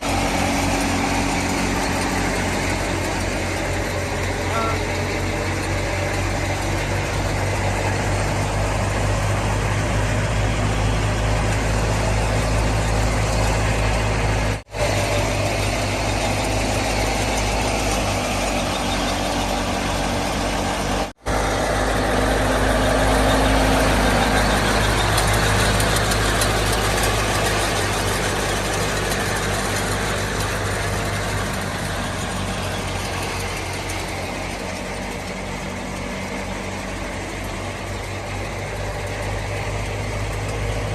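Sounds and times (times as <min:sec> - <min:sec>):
tractor diesel engine running: 0:00.0 - 0:40.9.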